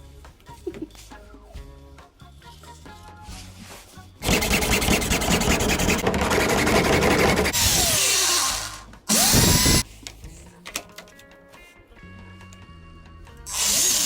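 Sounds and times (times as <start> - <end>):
handheld power tool whining: 4.2 - 9.8, 13.5 - 14.0.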